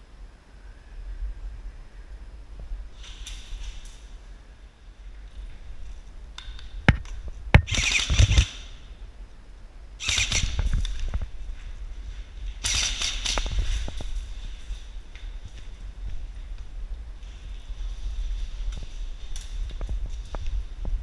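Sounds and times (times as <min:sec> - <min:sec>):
airsoft rifle fire: 0:07.6 - 0:08.8, 0:10.0 - 0:10.7.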